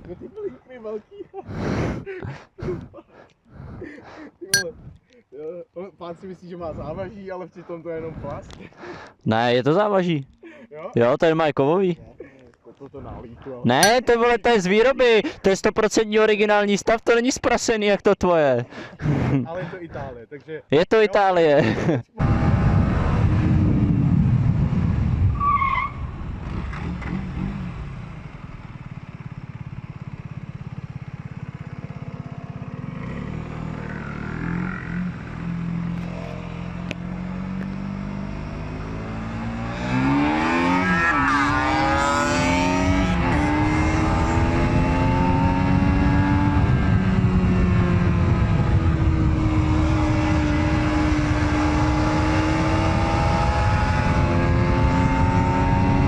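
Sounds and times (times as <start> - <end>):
motorcycle engine revving: 22.2 - 25.2, 26.0 - 56.0
wind noise on microphone: 22.2 - 26.7, 44.0 - 56.0.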